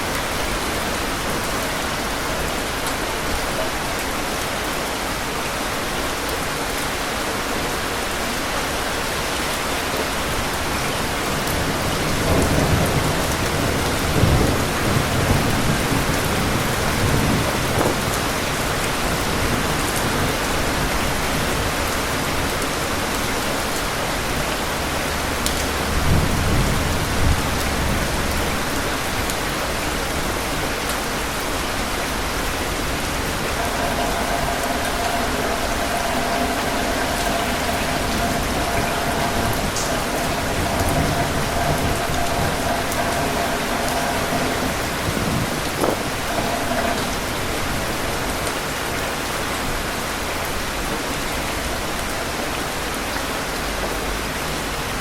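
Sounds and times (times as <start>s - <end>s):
steady rain: 0.0s - 55.0s
thunder rumbling: 25.1s - 49.2s.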